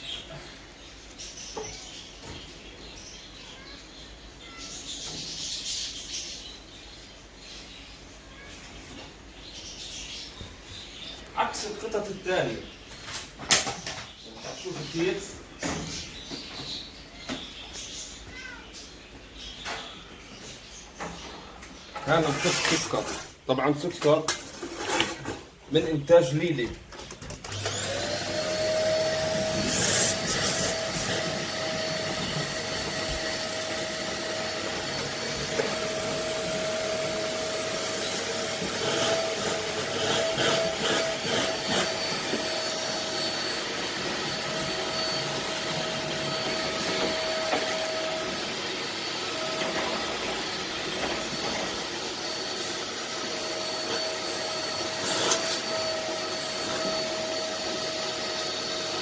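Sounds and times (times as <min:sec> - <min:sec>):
vacuum nozzle scraping floor: 0:22.0 - 0:23.4, 0:24.3 - 0:25.5, 0:27.5 - 0:59.0
vacuum cleaner motor whine: 0:27.4 - 0:59.0.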